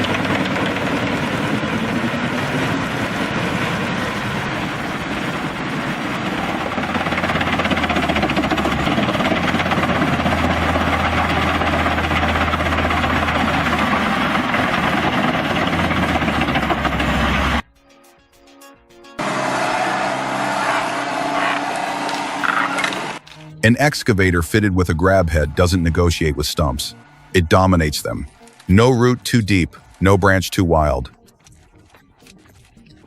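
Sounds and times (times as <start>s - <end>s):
wood chipper running: 0.0s - 17.6s, 19.2s - 23.3s.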